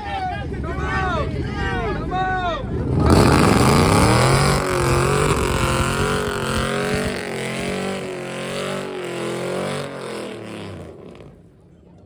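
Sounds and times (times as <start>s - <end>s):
truck engine revving: 2.6s - 11.4s.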